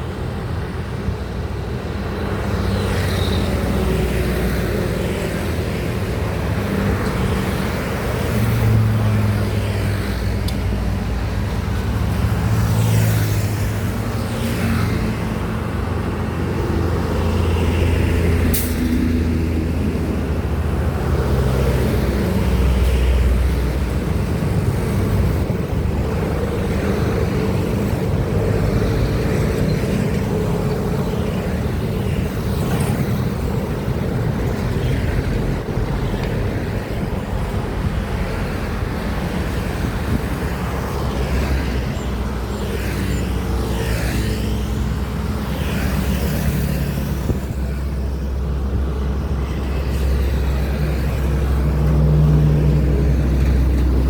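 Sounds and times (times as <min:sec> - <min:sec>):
heavy highway traffic: 0:00.0 - 0:54.0.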